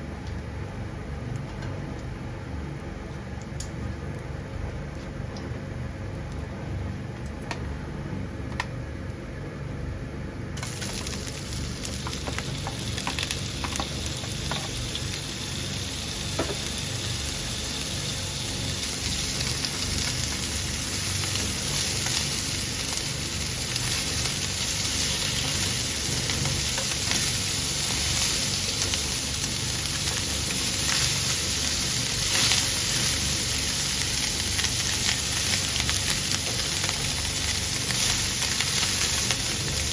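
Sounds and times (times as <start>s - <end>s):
food sizzling in a pan: 10.6s - 39.9s.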